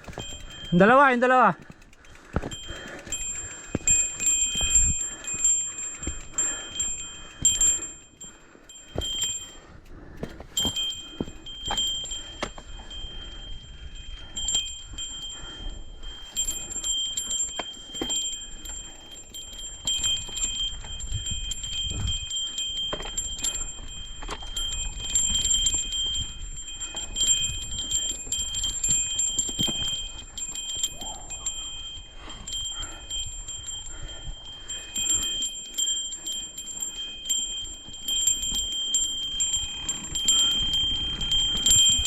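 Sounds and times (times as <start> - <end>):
mountain bike rattling and clicking: 0.0 - 42.0
high-pitched ringing tone: 10.6 - 42.0.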